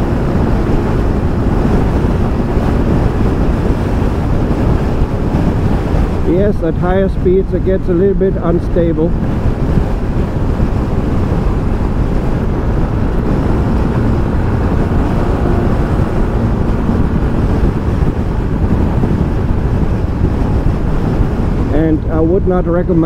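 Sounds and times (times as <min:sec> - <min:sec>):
wind rushing over microphone: 0:00.0 - 0:23.0.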